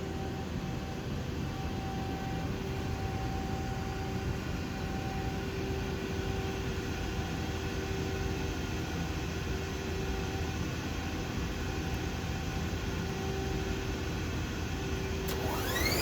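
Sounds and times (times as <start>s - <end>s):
machinery hum: 15.3s - 16.0s.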